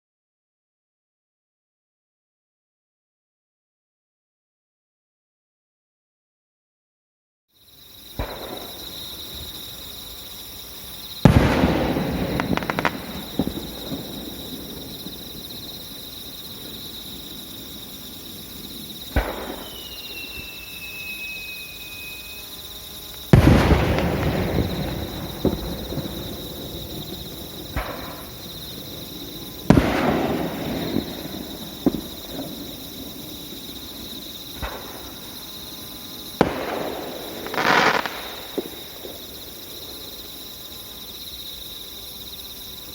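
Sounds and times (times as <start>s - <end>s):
small firework pops: 8.1s - 9.5s, 11.2s - 16.0s, 19.1s - 22.2s, 23.1s - 29.0s, 29.6s - 33.2s, 34.5s - 35.3s, 36.4s - 39.5s
firework booms with crackles: 8.1s - 10.2s, 10.9s - 22.3s, 23.0s - 40.4s
thin firework whistle: 19.0s - 33.2s, 36.4s - 39.0s.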